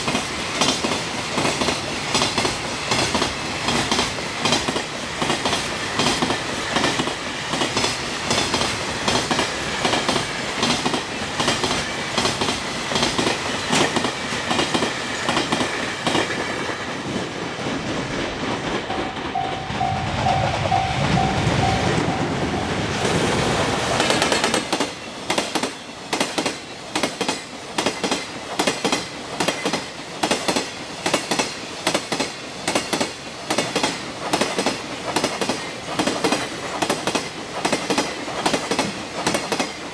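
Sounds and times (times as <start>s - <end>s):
train wheels clacking over rail joints: 0.0s - 39.9s.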